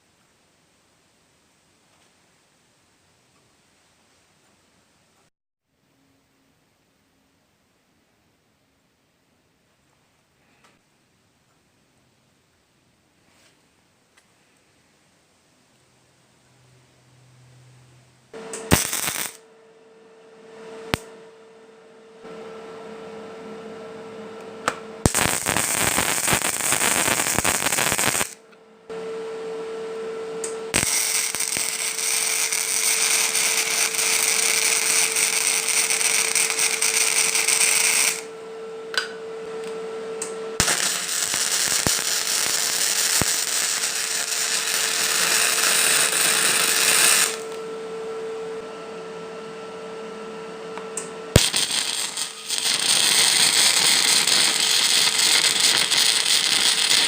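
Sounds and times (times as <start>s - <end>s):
power tools working steel: 18.4s - 19.4s, 25.0s - 28.4s, 30.4s - 47.8s, 51.3s - 57.0s.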